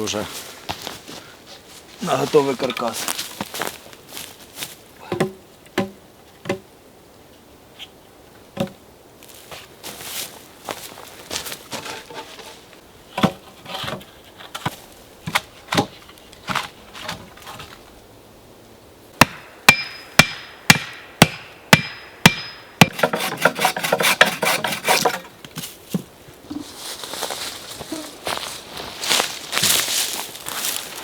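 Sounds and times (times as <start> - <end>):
wooden poles knocking: 5.0 - 6.6, 13.1 - 17.8, 19.2 - 26.7
sharp ringing blows: 19.2 - 22.9
wood clattering on wood: 22.8 - 26.0.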